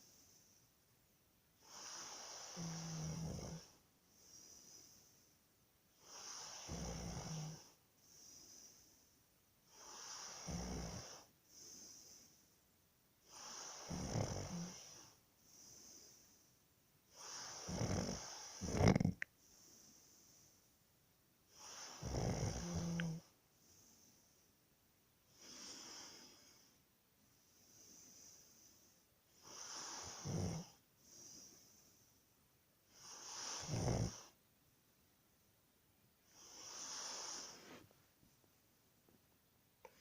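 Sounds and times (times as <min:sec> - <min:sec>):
faint breath: 0:00.0 - 0:00.8, 0:03.6 - 0:06.7, 0:07.6 - 0:10.5, 0:11.2 - 0:12.6, 0:14.6 - 0:16.6, 0:19.4 - 0:20.8, 0:22.6 - 0:24.6, 0:25.3 - 0:34.4, 0:36.2 - 0:38.1
person snoring: 0:01.7 - 0:03.8, 0:06.0 - 0:07.8, 0:09.7 - 0:11.3, 0:13.3 - 0:15.2, 0:17.2 - 0:19.3, 0:21.6 - 0:23.3, 0:29.4 - 0:30.8, 0:33.0 - 0:34.4.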